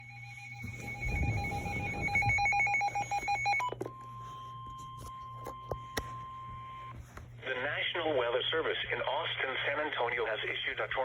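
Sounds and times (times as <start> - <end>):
rapid electronic alert beeping: 0.0 - 3.7
steady warning alarm tone: 0.0 - 7.6.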